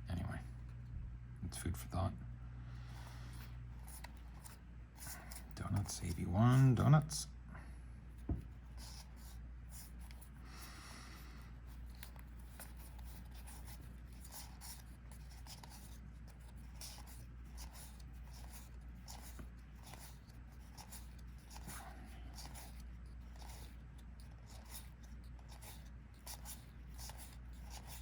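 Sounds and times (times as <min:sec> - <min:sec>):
low steady hum: 0:00.0 - 0:28.0
trading cards sliding and flipping: 0:02.8 - 0:06.9, 0:11.7 - 0:28.0.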